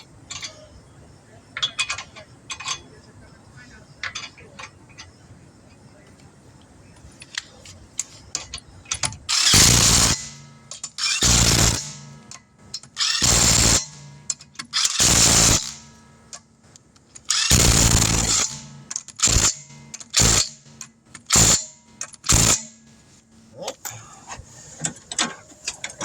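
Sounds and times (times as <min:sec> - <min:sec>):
impact wrench bursts: 0:09.0 - 0:16.4, 0:17.2 - 0:23.0.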